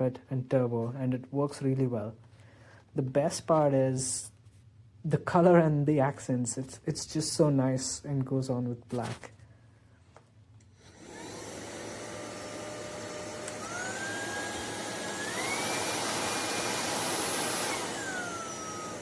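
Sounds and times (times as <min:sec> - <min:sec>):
stick vacuum motor whine: 0:10.7 - 0:19.0.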